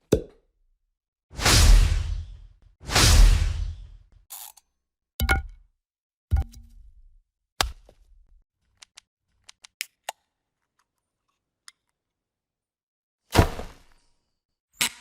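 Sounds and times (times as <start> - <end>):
sharp hits with low thud: 1.4 - 4.0.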